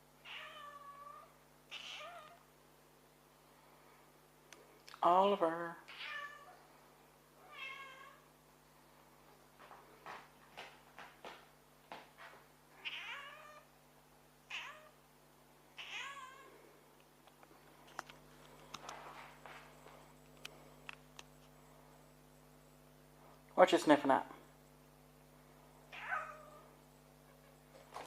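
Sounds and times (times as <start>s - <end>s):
cat meowing: 0.2s - 2.4s, 5.9s - 6.6s, 7.4s - 8.3s, 12.8s - 13.7s, 14.5s - 15.0s, 15.8s - 16.5s, 25.9s - 26.7s.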